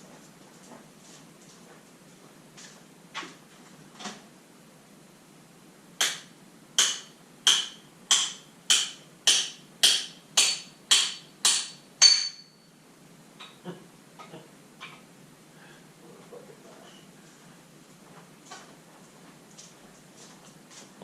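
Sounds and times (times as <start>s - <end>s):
hammer striking metal: 6.0s - 12.7s.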